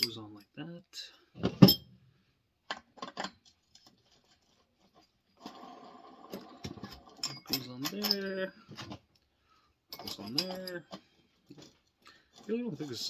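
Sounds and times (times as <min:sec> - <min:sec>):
light clicks of parts: 0:09.9 - 0:13.0.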